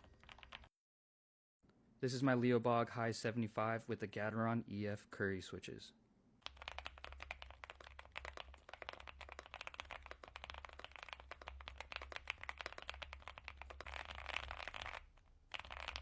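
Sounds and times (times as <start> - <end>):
fast mechanical keyboard typing: 0.0 - 0.7, 6.4 - 16.0.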